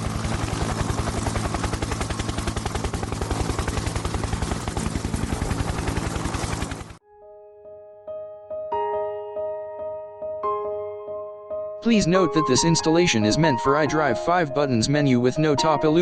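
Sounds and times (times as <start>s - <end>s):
rapid pulsing mechanical rattle: 0.0s - 7.0s
soft electric piano music: 7.0s - 16.0s.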